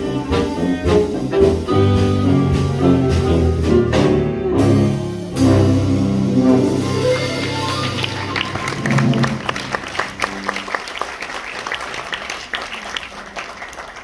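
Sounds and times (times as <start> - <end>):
saxophone: 0.0 - 4.8, 5.4 - 10.6
jazz band playing: 0.0 - 11.8
audience applause: 7.0 - 14.0.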